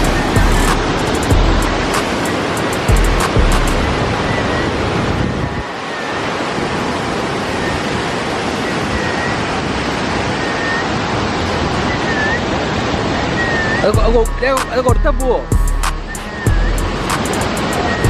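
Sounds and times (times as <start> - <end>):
waterfall rushing: 0.0 - 18.0.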